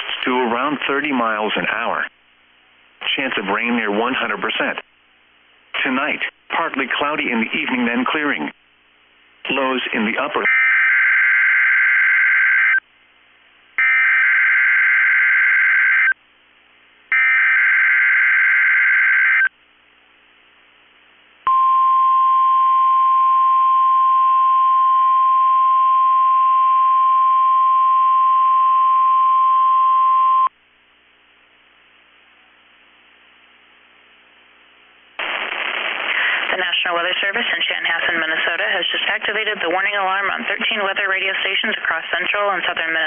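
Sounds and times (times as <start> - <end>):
steady warning alarm tone: 17.1 - 19.5.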